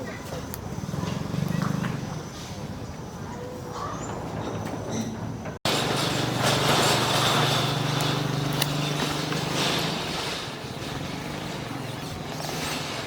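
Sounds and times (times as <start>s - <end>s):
small engine running: 5.7s - 13.0s.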